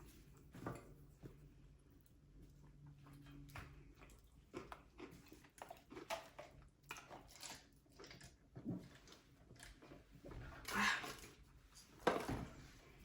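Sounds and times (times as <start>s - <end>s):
chewing with mouth clicks: 2.5s - 10.0s.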